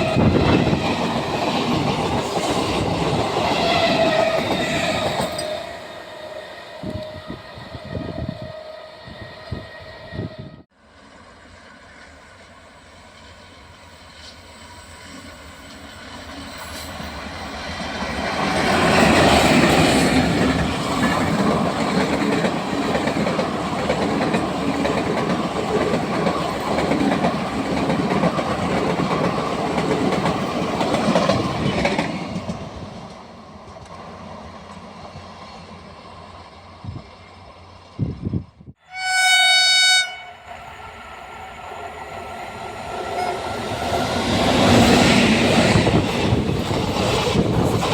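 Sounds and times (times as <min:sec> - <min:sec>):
train passing at speed: 0:00.0 - 0:47.9
train horn: 0:05.3 - 0:10.6, 0:38.8 - 0:40.5, 0:43.1 - 0:43.7.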